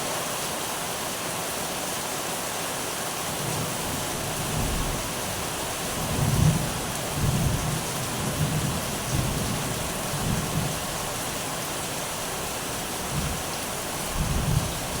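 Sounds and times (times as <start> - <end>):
steady rain falling: 0.0 - 15.0
low rumbles of thunder: 3.4 - 11.1, 14.0 - 15.0.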